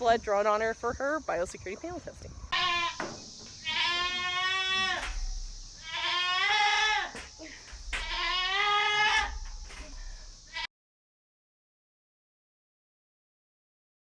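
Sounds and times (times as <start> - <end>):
goat bleating: 2.5 - 9.5.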